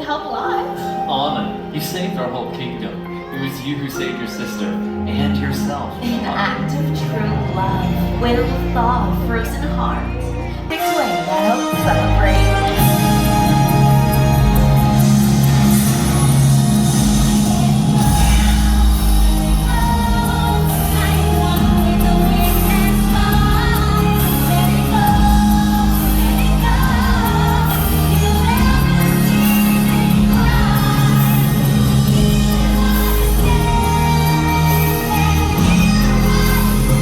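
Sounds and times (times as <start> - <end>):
show music with bass: 7.2 - 37.0
person singing: 9.5 - 37.0.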